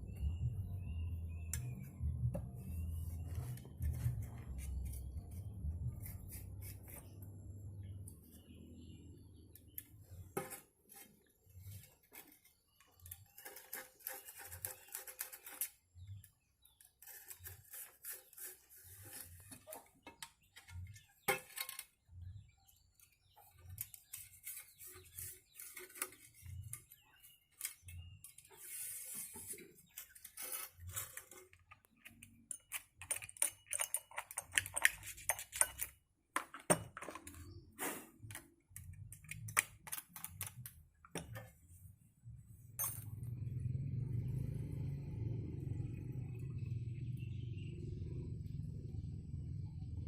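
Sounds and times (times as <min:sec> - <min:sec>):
clicks and knocks of handling: 0:29.3 - 0:37.5, 0:38.2 - 0:41.6.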